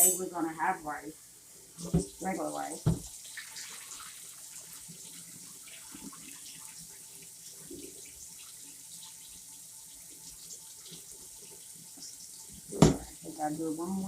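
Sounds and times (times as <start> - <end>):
rice being rinsed with clinks: 0.0 - 0.3
faucet water running into sink: 1.6 - 14.0.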